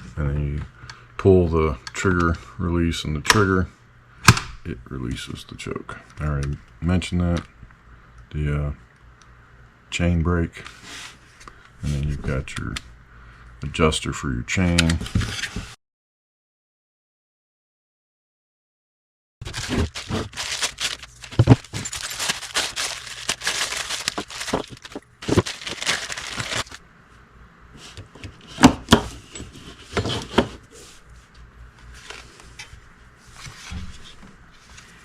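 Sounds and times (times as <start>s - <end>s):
packaging crinkling and tearing: 19.4s - 26.8s.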